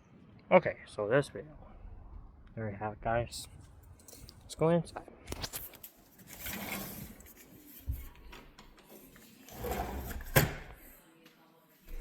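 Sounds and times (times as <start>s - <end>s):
door scraping and rubbing: 6.2s - 8.2s, 8.9s - 10.8s.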